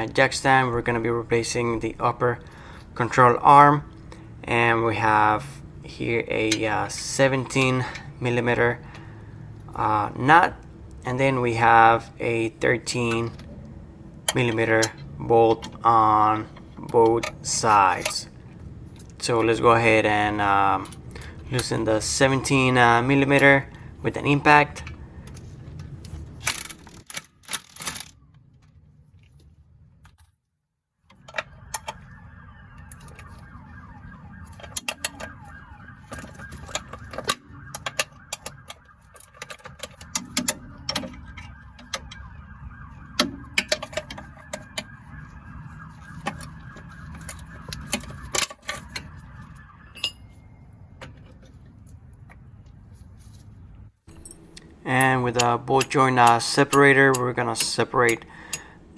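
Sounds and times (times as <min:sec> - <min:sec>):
metal tools clinking: 0:24.4 - 0:28.1, 0:36.1 - 0:42.2, 0:43.2 - 0:44.9, 0:46.2 - 0:49.2, 0:49.9 - 0:50.4, 0:54.1 - 0:58.7.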